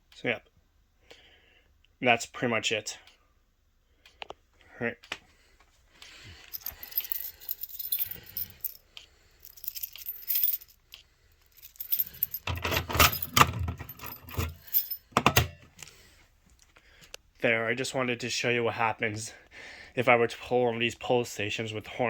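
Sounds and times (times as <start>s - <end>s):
keys jangling: 6.4s - 8.8s, 9.4s - 15.1s.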